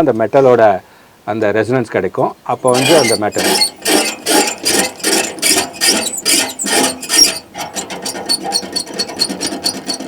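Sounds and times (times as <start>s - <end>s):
short high squeaks: 2.6s - 10.0s
squeak prop rasping against metal: 2.6s - 10.0s.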